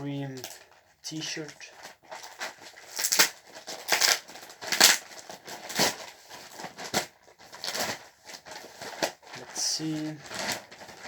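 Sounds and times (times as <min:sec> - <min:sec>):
package being opened by hand: 0:01.8 - 0:09.4.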